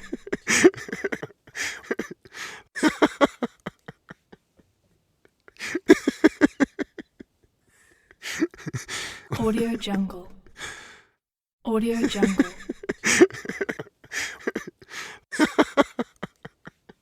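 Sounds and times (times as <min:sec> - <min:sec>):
men laughing: 0:00.0 - 0:02.2, 0:02.8 - 0:04.4, 0:05.6 - 0:07.3, 0:08.2 - 0:09.0, 0:12.1 - 0:17.0.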